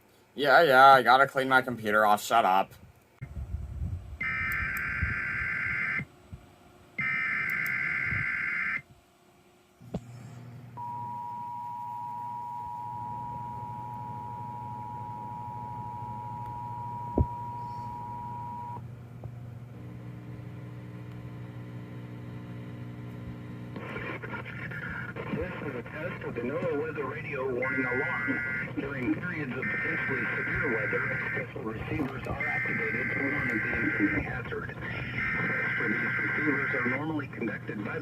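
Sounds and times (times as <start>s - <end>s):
click: 7.4s - 7.8s
low hum: 9.8s - 38.0s
harsh digital data bursts: 29.4s - 31.5s, 32.3s - 37.1s.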